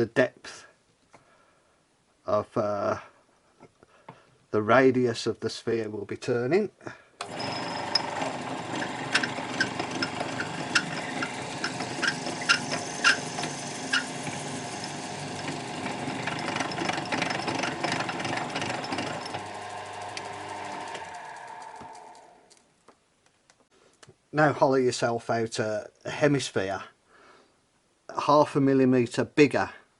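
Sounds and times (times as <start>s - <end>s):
tool clicking and knocking: 7.2s - 14.1s, 16.3s - 19.4s
lathe motor hum: 7.2s - 22.4s.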